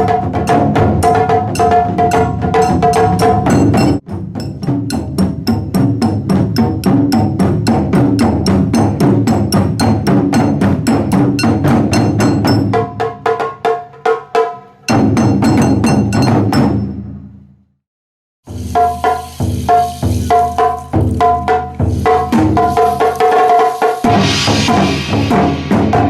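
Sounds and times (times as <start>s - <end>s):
taiko drums playing: 0.0s - 17.0s, 18.5s - 26.0s
ringing pitched percussion: 1.5s - 5.7s, 11.4s - 12.7s, 14.9s - 17.0s, 18.5s - 26.0s.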